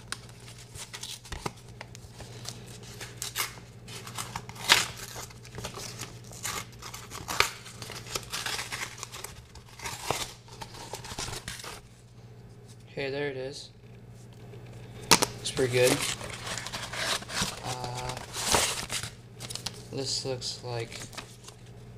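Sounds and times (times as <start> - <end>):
packaging rustling and tearing: 0.0 - 11.9, 15.1 - 19.9, 20.8 - 21.7
steady low hum: 0.0 - 21.9.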